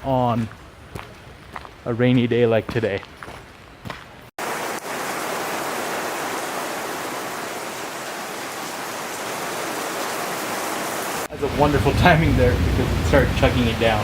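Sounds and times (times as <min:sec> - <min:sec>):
heavy rain pouring: 0:04.4 - 0:14.0.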